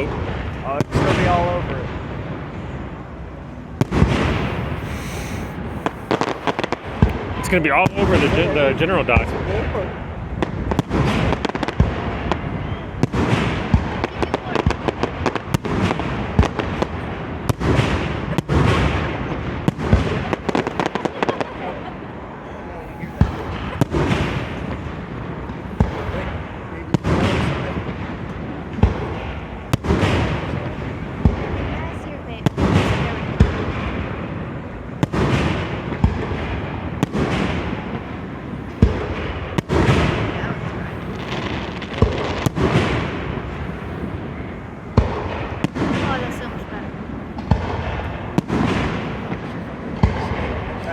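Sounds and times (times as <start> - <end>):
firework bangs and crackles: 0.0 - 50.9
fireworks shells bursting: 4.2 - 7.2
rumble of shell bursts: 14.6 - 31.7.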